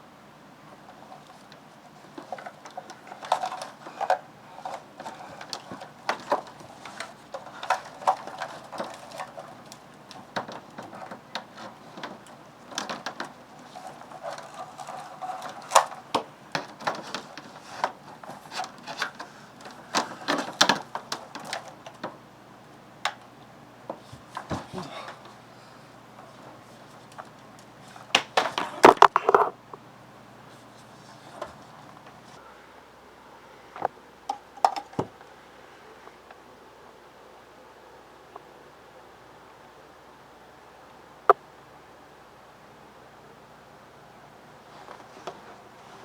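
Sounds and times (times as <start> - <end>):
plugs and cables rattling: 0.9 - 22.2, 33.8 - 35.2.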